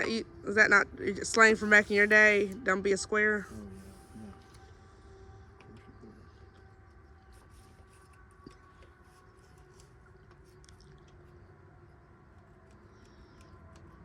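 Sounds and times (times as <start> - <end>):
faint background hum: 0.0 - 14.0.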